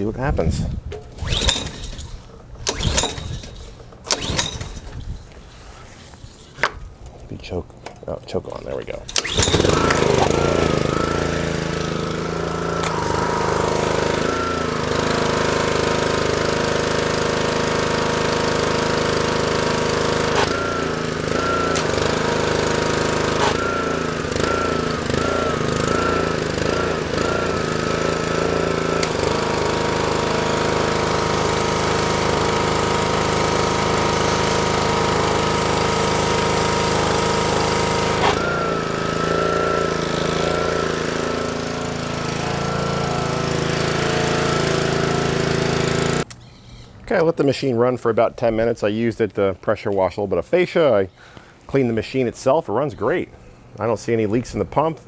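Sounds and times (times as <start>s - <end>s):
small engine running: 0.0s - 6.7s, 9.0s - 47.0s
sharp clicks: 46.2s - 46.9s.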